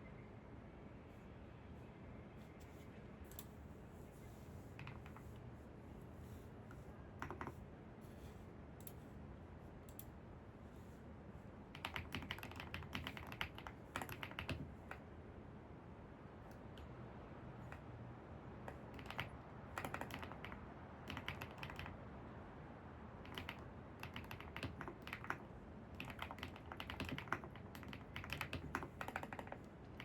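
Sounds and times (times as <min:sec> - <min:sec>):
computer keyboard typing: 0:04.8 - 0:05.4, 0:07.2 - 0:07.6, 0:11.7 - 0:15.0, 0:17.6 - 0:17.9, 0:18.5 - 0:22.0, 0:23.2 - 0:30.0.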